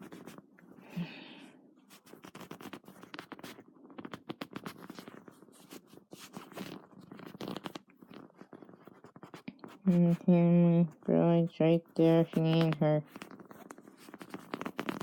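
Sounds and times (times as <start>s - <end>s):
scratchy rustling handling noise: 0.0s - 0.8s, 1.8s - 15.0s.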